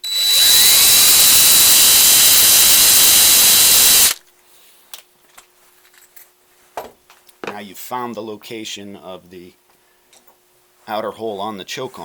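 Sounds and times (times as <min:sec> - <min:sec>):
power drill running: 0:00.0 - 0:04.2.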